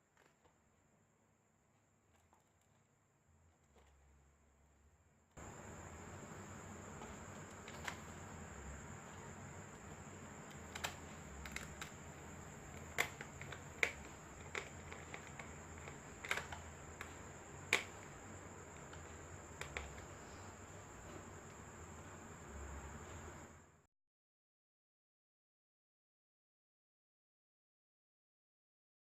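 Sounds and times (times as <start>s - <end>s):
faint hum and high whine: 0.0s - 23.9s
laptop clicks and taps: 7.0s - 8.2s, 9.7s - 18.2s, 18.8s - 20.2s.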